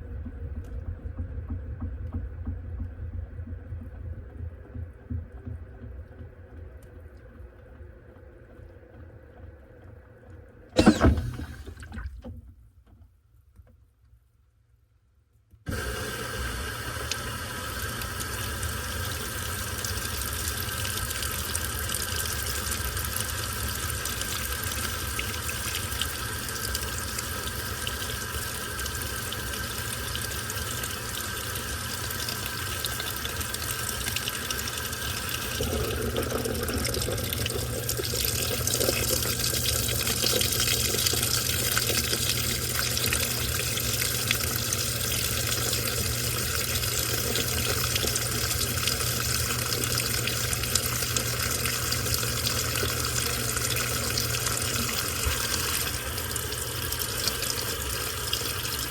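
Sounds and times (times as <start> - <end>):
washing machine filling with water: 0.0 - 12.6, 15.7 - 58.9
loud click: 10.8 - 11.5.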